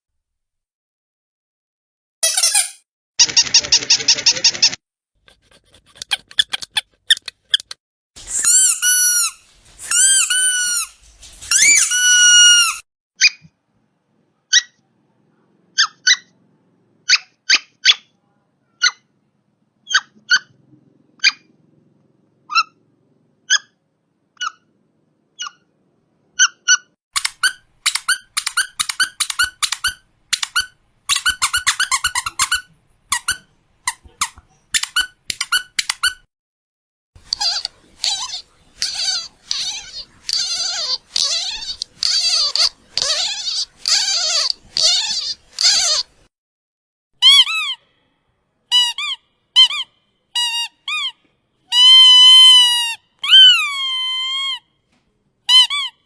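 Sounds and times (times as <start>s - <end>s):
rubber duck toy squeaking: 2.2s - 4.8s, 5.9s - 10.9s, 11.5s - 13.5s, 14.5s - 14.8s, 17.1s - 18.1s, 18.8s - 19.1s, 19.8s - 20.5s, 23.5s - 23.8s, 24.4s - 24.7s, 25.4s - 25.7s, 26.4s - 36.3s, 37.2s - 46.1s, 47.2s - 47.9s, 48.7s - 54.7s, 55.5s - 56.0s.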